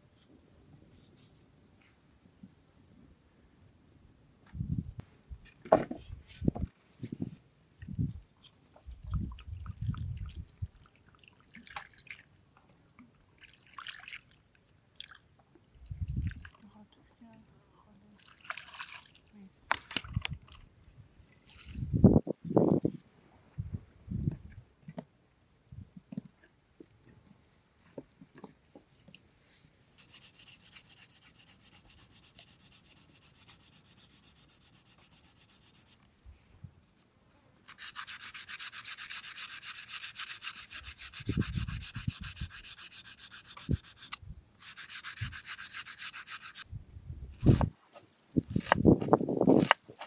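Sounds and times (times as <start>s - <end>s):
hand scraping rasping strokes: 30.0s - 36.1s, 37.7s - 46.6s.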